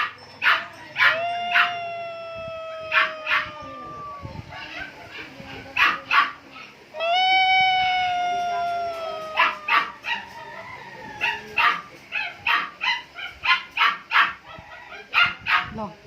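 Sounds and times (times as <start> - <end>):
dog barking and yipping: 0.0 - 1.8, 2.9 - 6.8, 9.3 - 10.6, 11.2 - 15.8
dog howling: 0.0 - 12.4.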